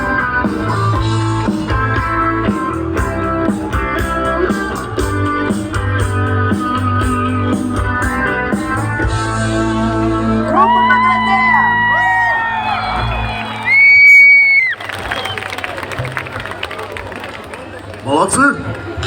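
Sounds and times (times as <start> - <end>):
steady drum beat: 0.0 - 10.0
sustained bass notes: 0.0 - 13.7
electric guitar: 0.0 - 14.2.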